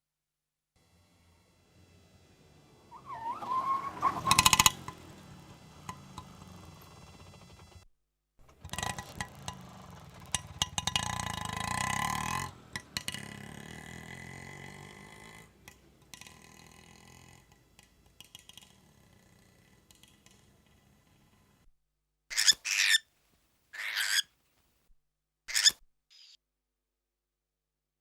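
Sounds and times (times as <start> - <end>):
auto rickshaw engine rattling: 0.8 - 21.7.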